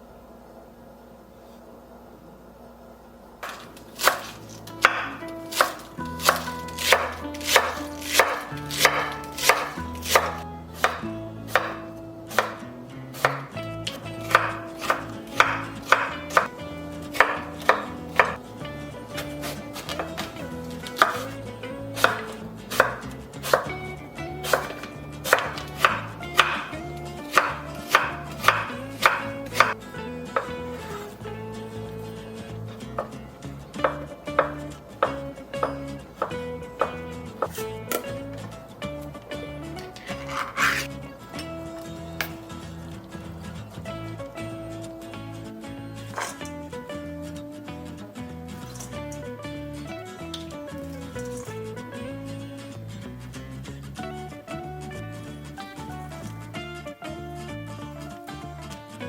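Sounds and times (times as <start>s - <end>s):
knife striking cutting board: 3.4s - 18.4s, 19.2s - 31.4s, 32.8s - 38.6s, 39.7s - 40.9s, 46.1s - 46.4s.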